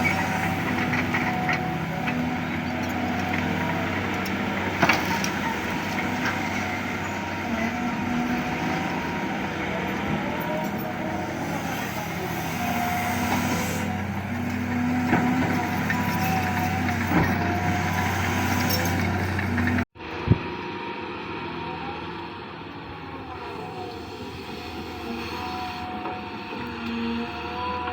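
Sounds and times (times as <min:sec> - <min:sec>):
diesel engine drone: 0:00.0 - 0:27.9.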